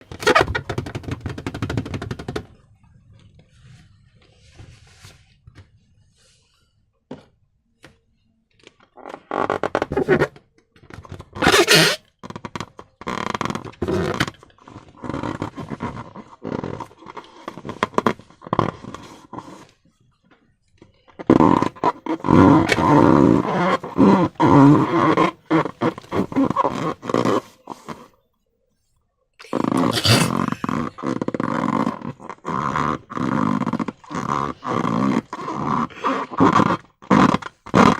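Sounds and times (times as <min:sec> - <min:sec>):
slime squelching: 0:29.4 - 0:31.1.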